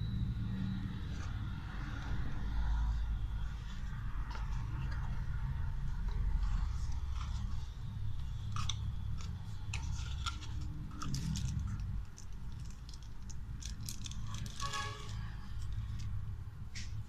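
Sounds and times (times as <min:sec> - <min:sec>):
steady low hum: 0:00.0 - 0:17.0
plastic packaging being unwrapped: 0:08.5 - 0:16.2.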